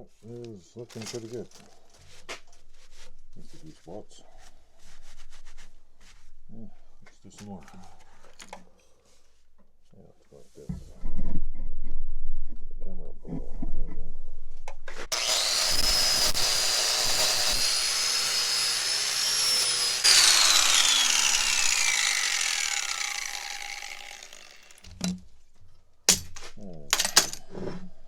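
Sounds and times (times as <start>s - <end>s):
wire wheel grinder whining: 15.1s - 25.0s.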